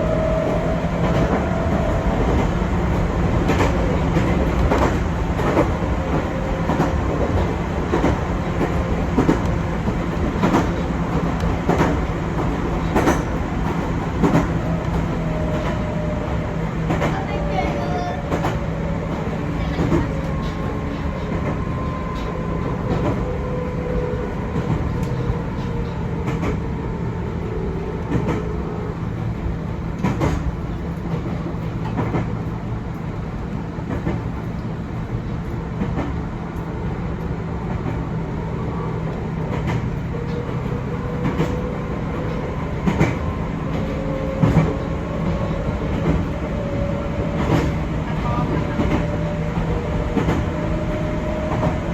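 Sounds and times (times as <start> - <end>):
electric train rumbling: 0.0 - 51.9
wheels clicking over rail joints: 0.4 - 16.1.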